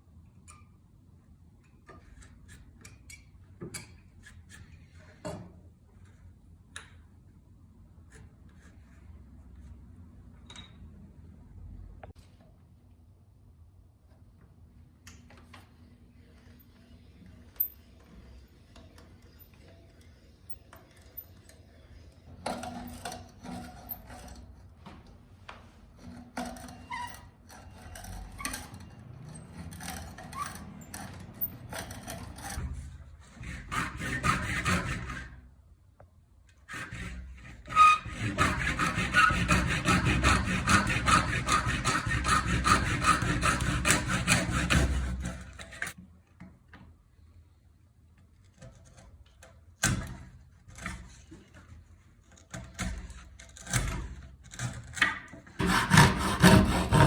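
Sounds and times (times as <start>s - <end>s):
hand saw cutting wood: 29.2s - 35.4s, 36.6s - 46.0s, 52.6s - 57.0s.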